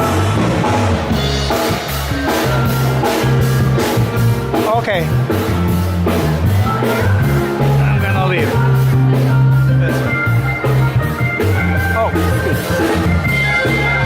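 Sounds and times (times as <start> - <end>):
faint crowd voices: 0.0 - 14.0
loud band music with drums: 0.0 - 14.0.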